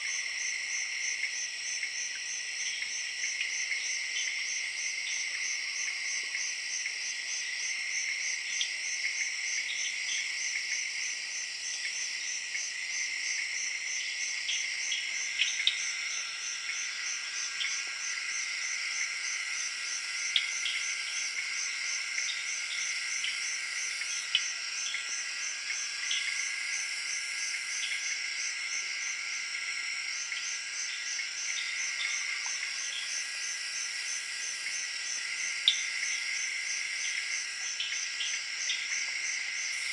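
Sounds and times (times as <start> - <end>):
crickets chirping: 0.0 - 39.9
tree frogs trilling: 13.4 - 39.9.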